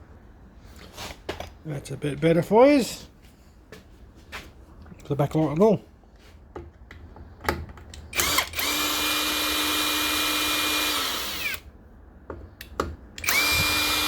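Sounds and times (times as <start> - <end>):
cordless drill spinning: 8.1 - 11.7, 13.2 - 14.0.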